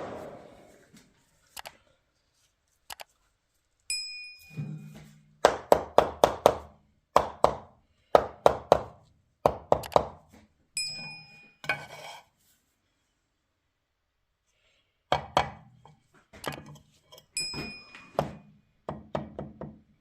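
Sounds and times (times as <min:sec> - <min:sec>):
bell-like ding: 0:03.9 - 0:05.0, 0:10.8 - 0:11.6, 0:17.4 - 0:18.2.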